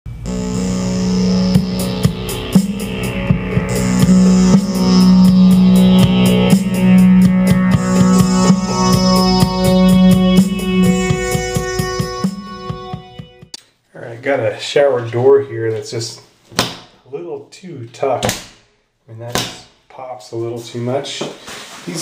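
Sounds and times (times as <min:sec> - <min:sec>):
guitar and synthesizer music: 0:00.1 - 0:13.6.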